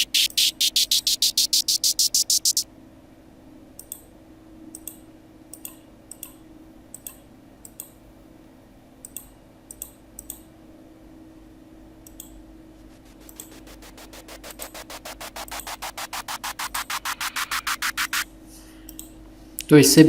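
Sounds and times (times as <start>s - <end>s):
computer mouse clicks: 4.7s - 7.9s, 9.0s - 10.4s, 12.0s - 14.2s
snare drum roll: 12.8s - 18.2s.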